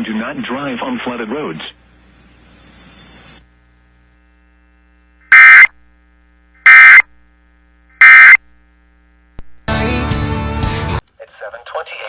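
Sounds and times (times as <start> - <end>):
buzzy digital data tones: 8.0 - 8.4.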